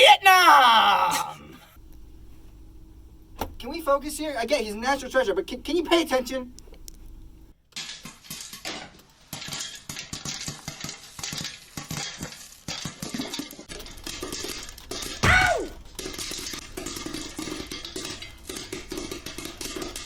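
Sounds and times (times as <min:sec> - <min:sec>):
small hard objects clattering: 0:07.8 - 0:20.0.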